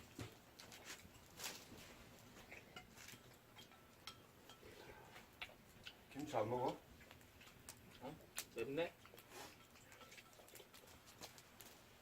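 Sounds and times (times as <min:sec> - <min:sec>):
spoons clinking against bowls: 0:02.7 - 0:04.8.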